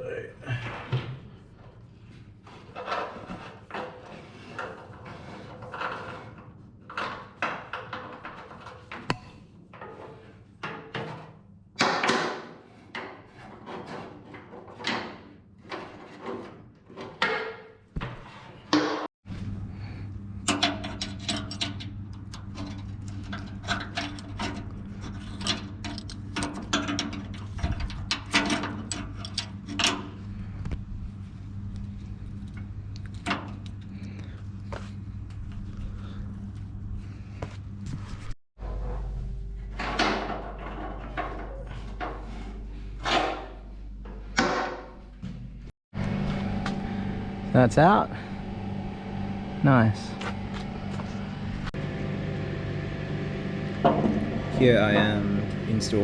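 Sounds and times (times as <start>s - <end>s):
steady low hum: 19.3s - 56.0s.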